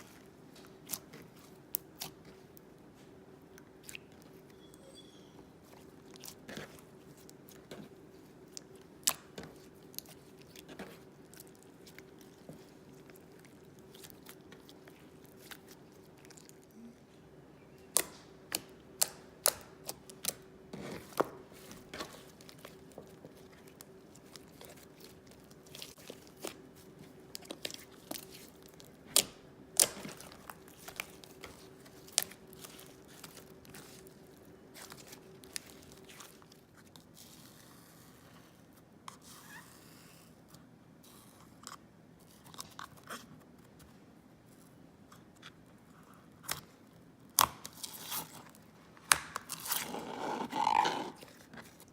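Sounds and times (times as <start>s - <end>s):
slime being squished: 0.0s - 2.7s, 17.9s - 37.7s.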